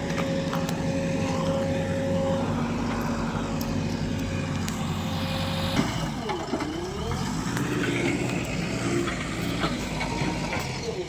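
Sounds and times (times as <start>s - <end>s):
high whine: 0.0s - 7.0s
diesel engine running: 0.0s - 11.0s.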